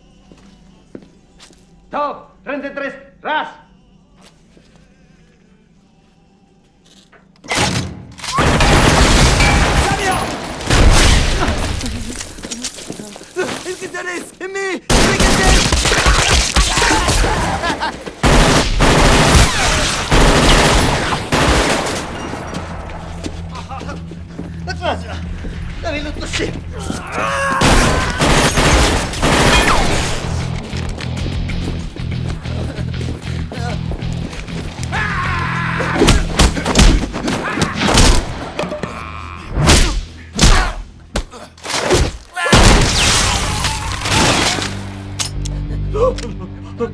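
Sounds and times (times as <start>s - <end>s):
rapid automatic gunfire: 14.9s - 16.6s, 18.2s - 22.2s, 27.6s - 30.1s
background music: 17.0s - 37.2s, 38.0s - 46.9s.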